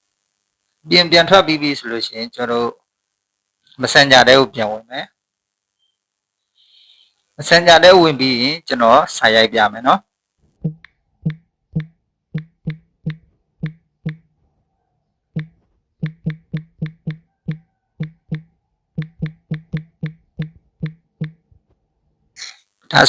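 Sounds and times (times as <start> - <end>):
keyboard keypress clicks: 15.4 - 21.4.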